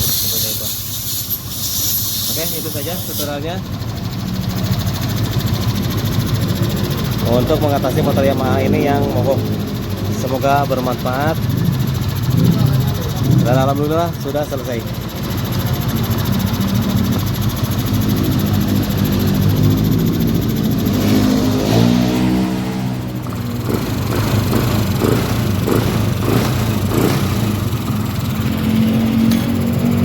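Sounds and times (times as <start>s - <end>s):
scooter engine idling: 0.0s - 30.0s.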